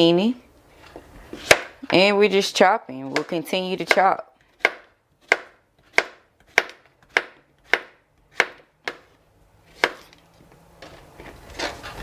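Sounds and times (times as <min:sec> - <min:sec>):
knife chopping vegetable: 0:01.4 - 0:02.0, 0:03.1 - 0:09.1, 0:09.7 - 0:10.1.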